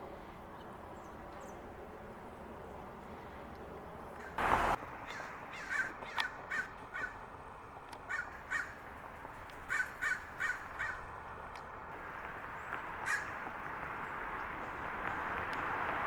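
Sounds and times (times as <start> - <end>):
crows cawing: 4.2 - 7.2, 8.1 - 8.8, 9.7 - 11.1, 13.0 - 13.4.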